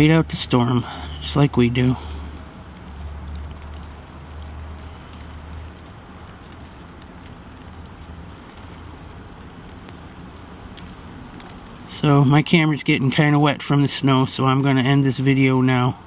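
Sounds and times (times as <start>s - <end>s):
steady hiss of falling snow: 0.0s - 16.0s
faint ticks: 2.2s - 12.0s.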